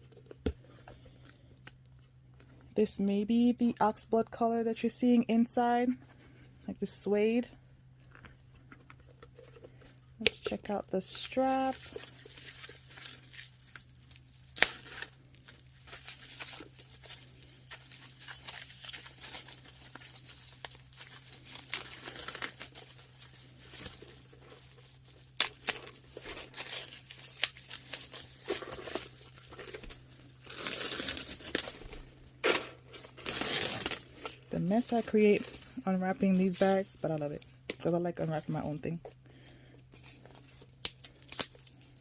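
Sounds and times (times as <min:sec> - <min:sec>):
packaging crinkling and tearing: 0:11.0 - 0:35.1, 0:39.9 - 0:42.0.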